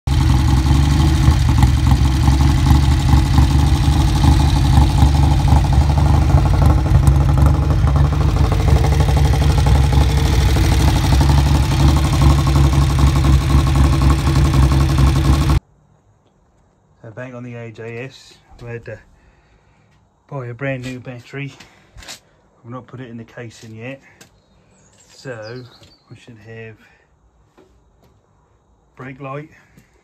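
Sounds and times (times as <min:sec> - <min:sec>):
motorcycle engine idling: 0:00.1 - 0:15.6.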